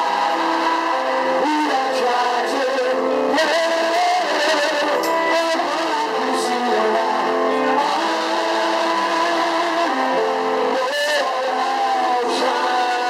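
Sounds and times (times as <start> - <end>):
live band playing distorted chords: 0.0 - 13.0.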